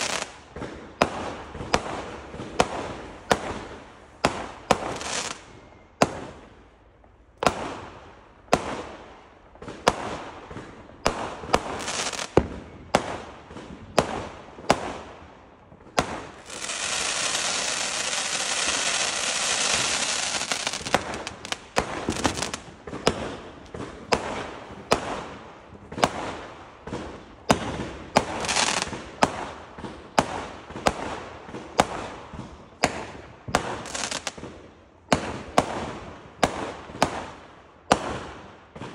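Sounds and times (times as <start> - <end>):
fireworks bangs and crackle: 0.0 - 38.9.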